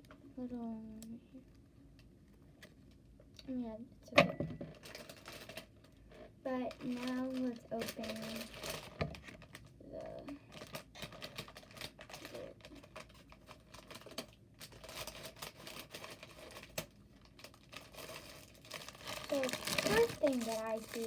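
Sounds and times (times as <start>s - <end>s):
hands rustling package: 4.7s - 21.0s.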